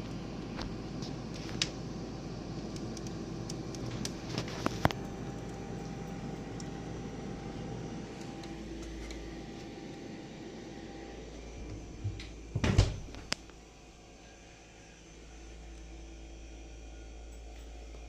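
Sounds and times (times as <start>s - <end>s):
low hum: 0.0s - 18.0s
refrigerator door knocks and thump: 12.0s - 13.2s.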